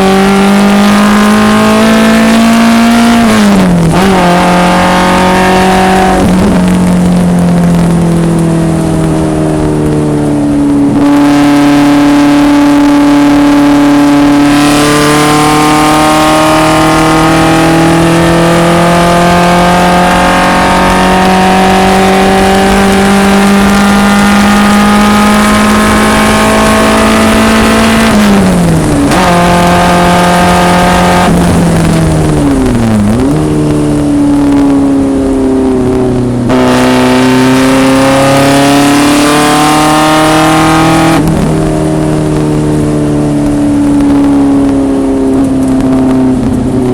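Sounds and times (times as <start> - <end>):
racecar engine running hard: 0.0 - 46.9.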